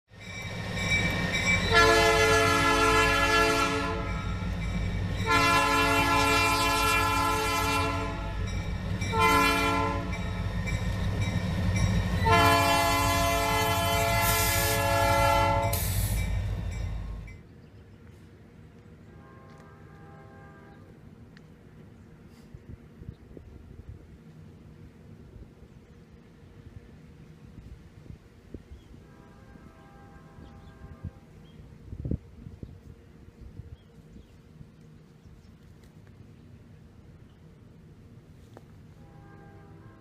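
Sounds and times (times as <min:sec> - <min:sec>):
locomotive air horn blasts: 0:01.7 - 0:04.2, 0:05.2 - 0:08.5, 0:09.1 - 0:10.4, 0:12.1 - 0:16.4, 0:19.1 - 0:20.9, 0:29.0 - 0:31.4, 0:38.9 - 0:40.0.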